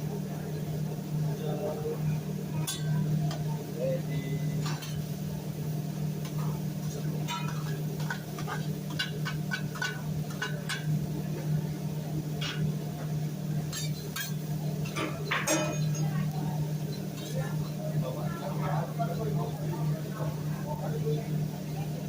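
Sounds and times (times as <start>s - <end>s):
low steady hum: 0.0s - 22.0s
metal utensils clinking on griddle: 2.6s - 3.5s, 4.1s - 5.1s, 6.2s - 11.2s, 12.4s - 12.8s, 13.6s - 17.8s.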